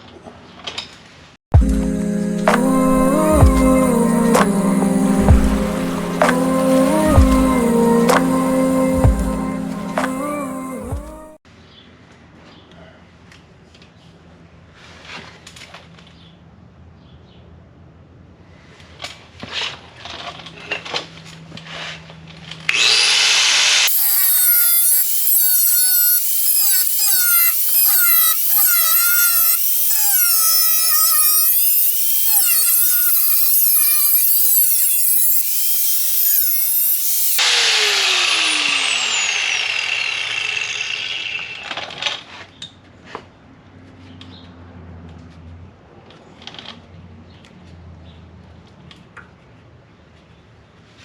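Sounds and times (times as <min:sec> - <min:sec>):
rotary cutting wheel cutting metal: 0:01.8 - 0:11.3, 0:22.7 - 0:42.2.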